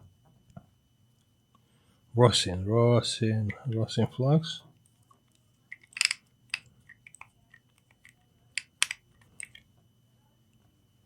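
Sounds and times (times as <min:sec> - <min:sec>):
faint high whine: 0:00.0 - 0:11.0
sharp clicks and crackles: 0:05.3 - 0:09.6.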